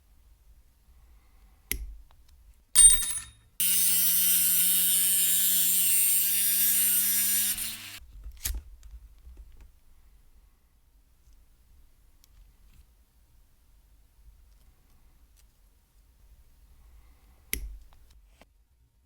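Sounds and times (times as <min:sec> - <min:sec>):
small electric motor humming: 0:03.6 - 0:08.0.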